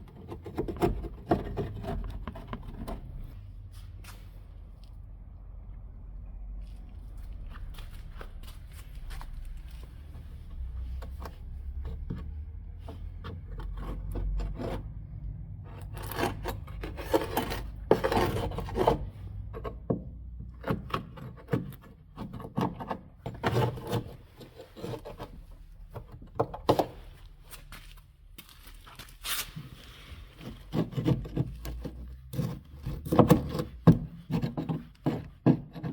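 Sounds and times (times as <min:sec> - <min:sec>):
rubbing and scraping on a surface: 0:00.0 - 0:04.5, 0:07.6 - 0:27.9, 0:28.7 - 0:35.9
low steady rumble: 0:00.1 - 0:20.7.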